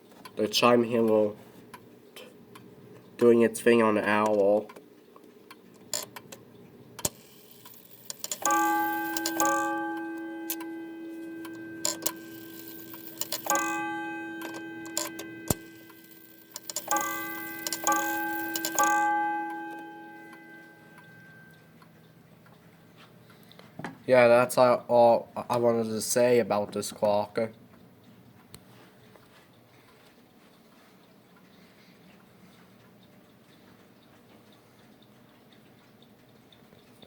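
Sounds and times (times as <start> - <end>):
clock ticking: 7.0 - 21.9
clock gong striking: 7.1 - 21.6.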